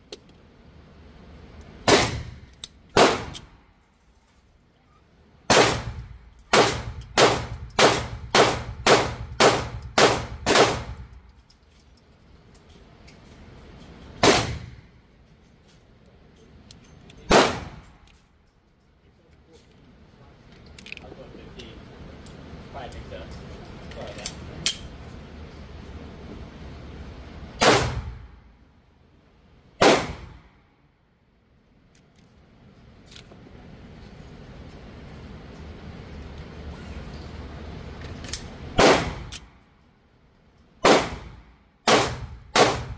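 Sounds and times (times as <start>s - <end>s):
pistol shots: 1.8s - 2.4s, 3.0s - 3.5s, 5.5s - 11.0s, 14.2s - 14.8s, 17.3s - 17.9s, 27.6s - 28.3s, 29.8s - 30.5s, 38.8s - 39.5s, 40.8s - 42.9s
loud sharp bangs: 1.8s - 3.5s, 5.5s - 11.0s, 14.2s - 14.9s, 17.3s - 18.0s, 27.6s - 28.4s, 29.8s - 30.6s, 38.8s - 39.3s, 40.8s - 42.9s.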